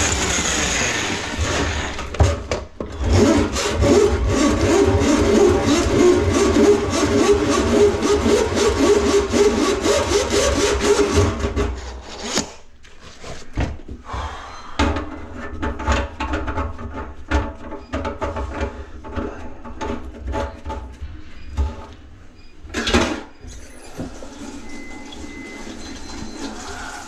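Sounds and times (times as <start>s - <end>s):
power tool chattering: 0.0s - 2.1s.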